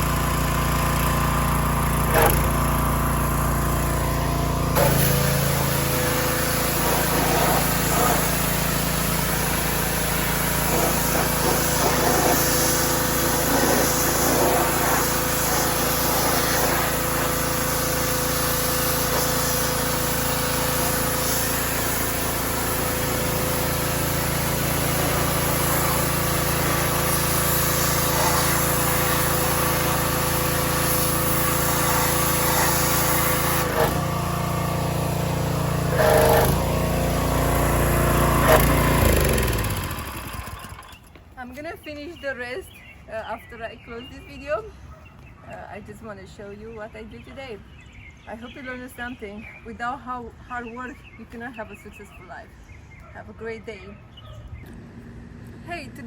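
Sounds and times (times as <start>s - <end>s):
pressure washer motor drone: 0.0s - 41.3s
water jet hissing: 4.7s - 36.6s.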